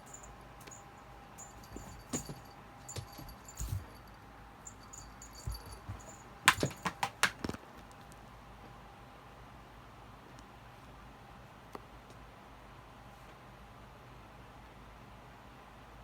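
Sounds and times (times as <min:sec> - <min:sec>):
cat toy jingling: 0:00.0 - 0:07.2
small knocks: 0:05.4 - 0:07.6
sharp clicks and knocks: 0:05.5 - 0:07.6.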